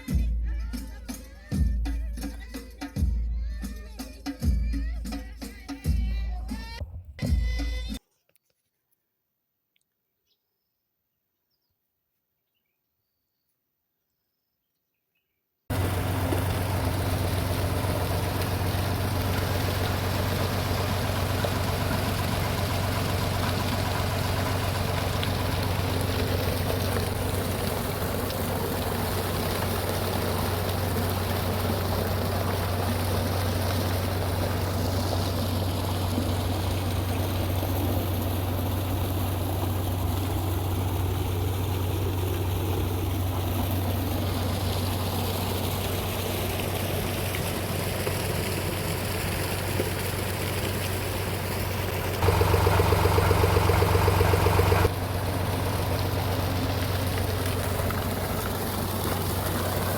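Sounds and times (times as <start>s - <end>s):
constant low hum: 15.7s - 59.9s.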